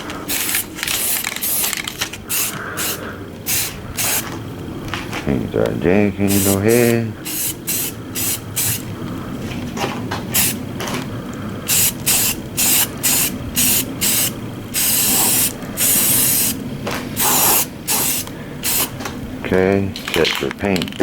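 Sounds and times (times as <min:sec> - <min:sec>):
spray can hissing: 0:00.3 - 0:04.3, 0:06.3 - 0:08.9, 0:10.3 - 0:10.6, 0:11.7 - 0:16.6, 0:17.2 - 0:19.0.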